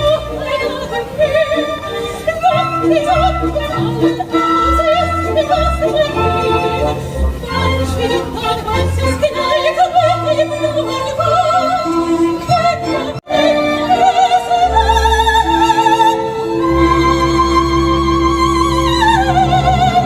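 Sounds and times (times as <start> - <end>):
orchestra with strings: 0.0 - 20.0
soprano singing opera: 0.0 - 20.0.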